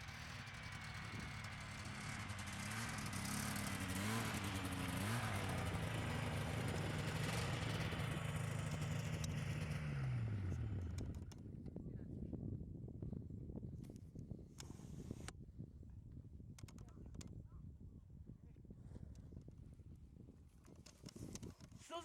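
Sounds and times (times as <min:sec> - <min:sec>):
snowmobile engine running: 0:00.0 - 0:11.4.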